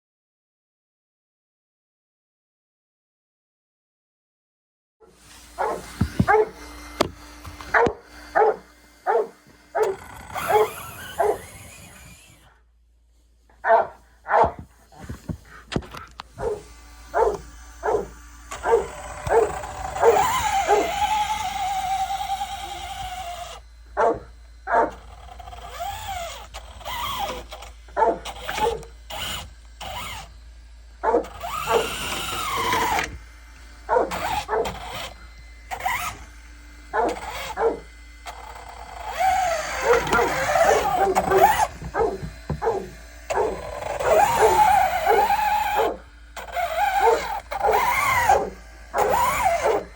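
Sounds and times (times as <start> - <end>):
dog barking: 5.6 - 6.6, 7.7 - 11.6, 13.6 - 14.7, 15.6 - 21.5, 24.0 - 26.2, 27.0 - 29.3, 31.0 - 33.0, 33.9 - 35.1, 36.9 - 37.9, 39.2 - 46.0, 46.6 - 49.9
dog whining: 5.6 - 6.6, 7.6 - 12.5, 13.6 - 30.3, 31.0 - 33.2, 33.9 - 36.2, 36.9 - 49.9.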